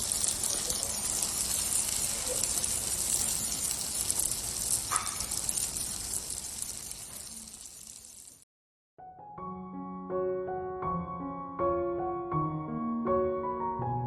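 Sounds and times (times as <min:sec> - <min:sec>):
peppers frying in oil: 0:00.0 - 0:08.5.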